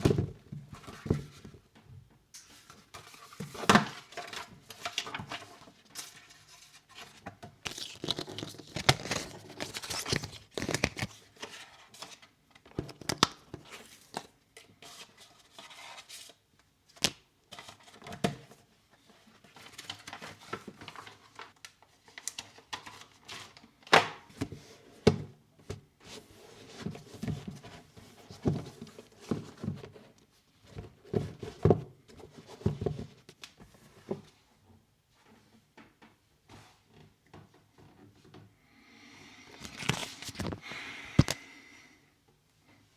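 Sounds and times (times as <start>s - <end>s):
packaging crinkling and tearing: 7.6s - 11.3s, 39.6s - 40.6s.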